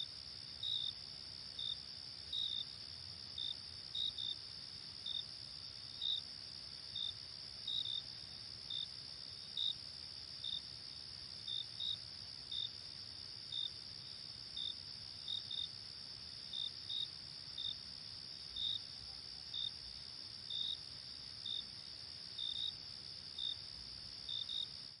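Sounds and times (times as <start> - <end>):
cricket chirping: 0.0 - 25.0.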